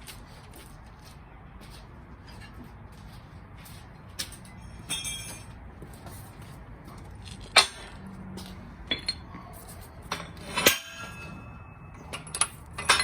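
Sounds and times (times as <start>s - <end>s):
metal clinks and knocks: 4.2s - 6.1s, 7.3s - 13.0s.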